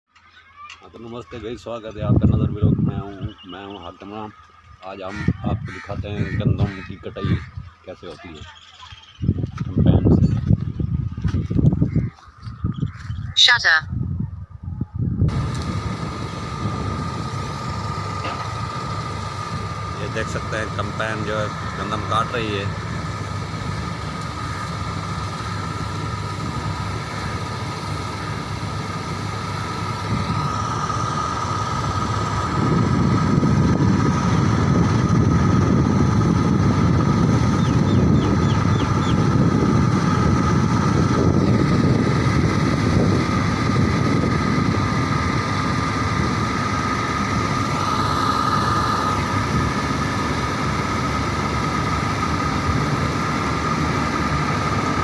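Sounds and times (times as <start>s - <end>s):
combine harvester engine drone: 0.2s - 13.8s, 15.0s - 55.0s.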